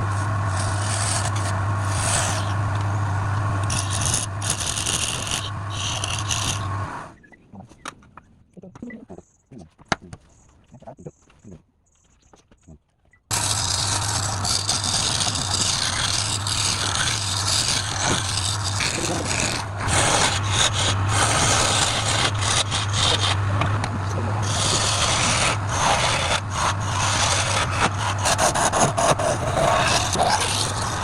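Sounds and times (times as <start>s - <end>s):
lathe motor humming: 0.0s - 7.1s, 13.3s - 31.0s
tool scraping spinning wood: 0.0s - 7.1s, 13.3s - 31.0s.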